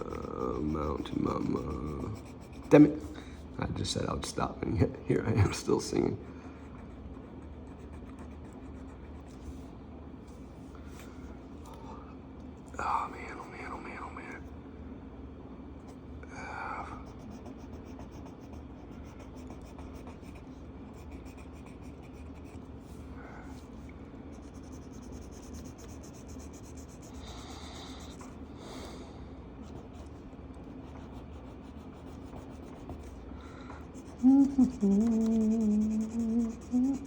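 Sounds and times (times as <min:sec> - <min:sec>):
marker scratching on paper: 0:00.0 - 0:03.2, 0:17.2 - 0:22.6, 0:24.3 - 0:28.4, 0:29.6 - 0:33.2, 0:34.0 - 0:37.0
steady low hum: 0:00.0 - 0:37.0.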